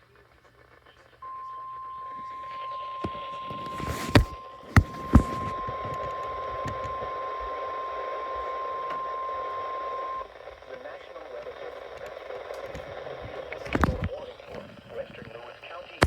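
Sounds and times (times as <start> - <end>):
radio hiss: 0.0 - 16.0
steady high alarm tone: 1.2 - 10.6
sharp static clicks: 2.2 - 16.0.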